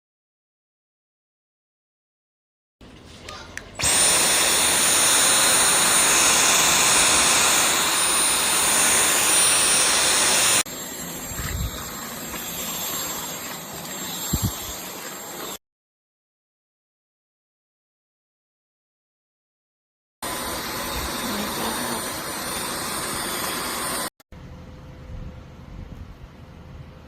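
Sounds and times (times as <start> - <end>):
cordless vacuum running: 3.8 - 15.6, 20.2 - 24.1.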